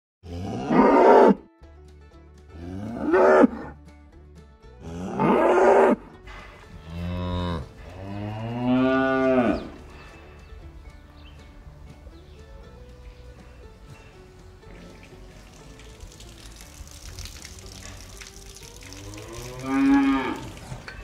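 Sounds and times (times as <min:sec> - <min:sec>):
cattle mooing: 0:00.3 - 0:01.4, 0:05.0 - 0:06.1, 0:06.8 - 0:09.8, 0:19.0 - 0:21.0.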